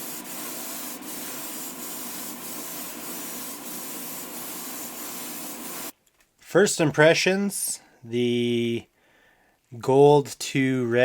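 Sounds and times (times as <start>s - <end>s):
spray hissing: 0.0s - 5.9s.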